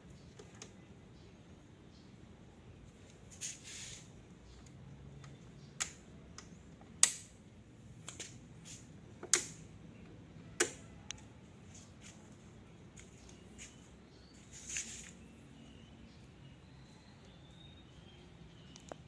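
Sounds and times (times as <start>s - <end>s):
short rustle: 14.4s - 15.2s.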